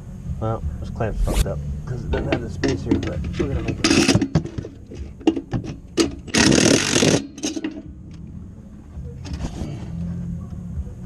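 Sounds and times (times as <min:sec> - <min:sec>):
low hum: 0:00.0 - 0:06.0, 0:07.8 - 0:09.2
loud rushing burst: 0:00.9 - 0:01.9.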